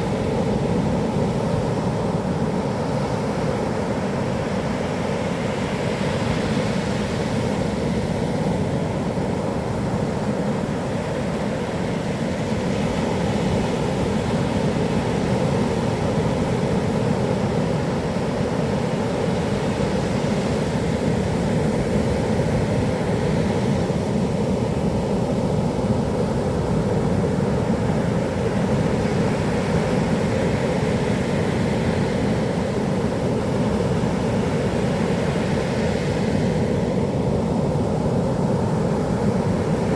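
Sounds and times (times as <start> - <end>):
wind: 0.0 - 39.9
heavy surf roaring: 10.5 - 39.9.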